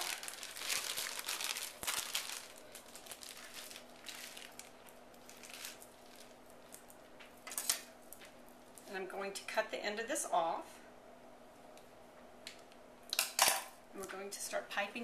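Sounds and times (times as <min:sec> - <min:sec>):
plastic bag crinkling: 0:00.0 - 0:08.9.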